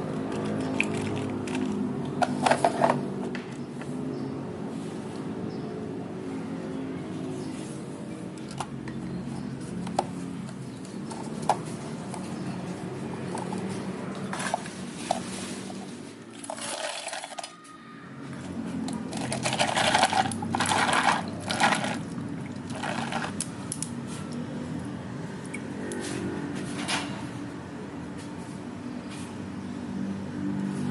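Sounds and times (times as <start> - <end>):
liquid pouring: 16.4 - 17.5, 19.1 - 23.4.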